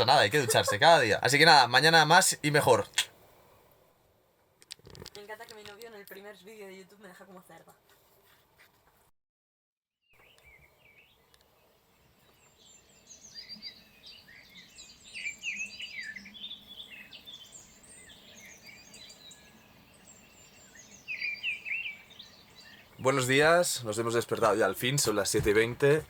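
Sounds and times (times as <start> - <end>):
songbirds singing and calling: 10.1 - 26.0.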